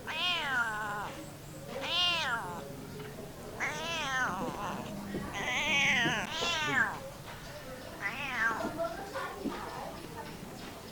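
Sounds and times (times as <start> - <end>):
cat meowing: 0.1 - 1.1, 1.8 - 2.6, 3.6 - 7.0, 8.0 - 8.6.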